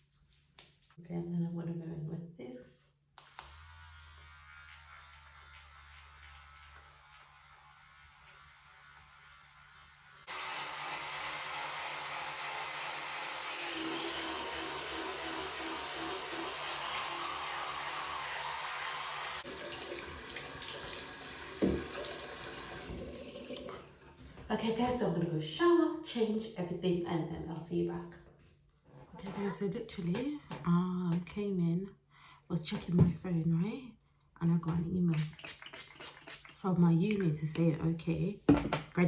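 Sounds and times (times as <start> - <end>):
water running into sink: 12.6 - 24.1.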